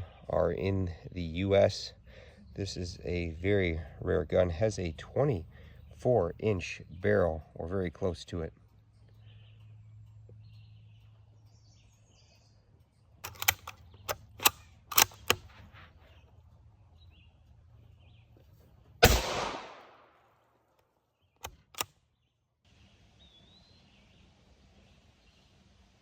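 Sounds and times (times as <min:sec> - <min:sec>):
sharp metallic clicks: 0:12.8 - 0:15.6, 0:19.0 - 0:20.1, 0:20.8 - 0:22.1
rifle shot with echo: 0:19.0 - 0:20.2.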